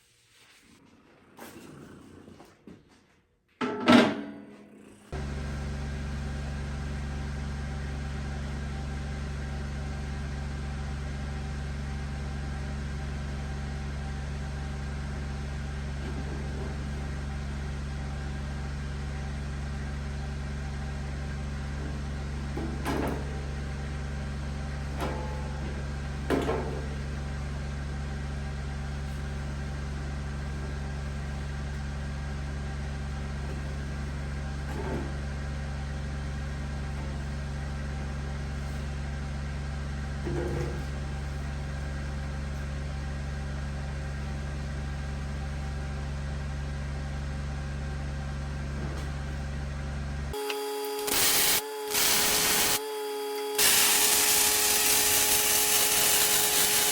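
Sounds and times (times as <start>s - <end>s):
machine humming: 50.3s - 56.9s.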